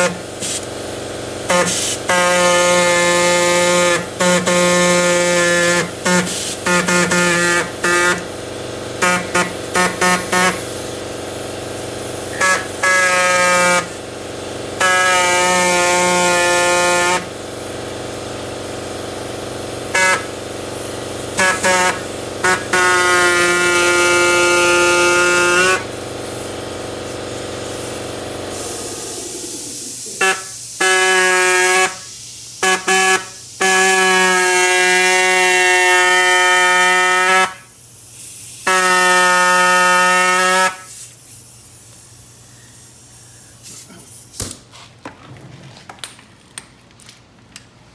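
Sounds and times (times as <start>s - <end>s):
power tool buzzing: 0.0s - 17.3s, 19.8s - 37.7s, 38.6s - 41.2s
steady hum: 25.9s - 30.8s.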